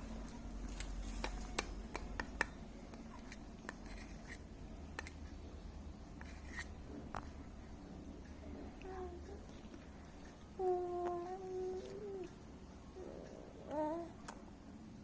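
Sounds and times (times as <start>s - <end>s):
baby eating clicks and smacks: 0.3s - 5.4s.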